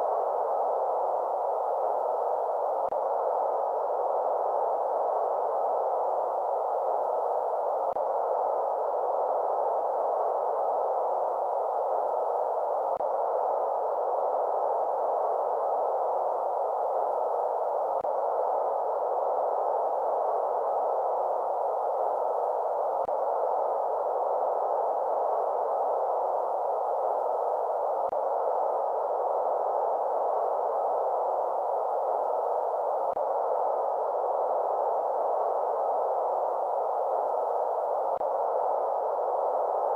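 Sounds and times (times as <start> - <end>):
electronic white noise hiss: 0.0 - 39.9.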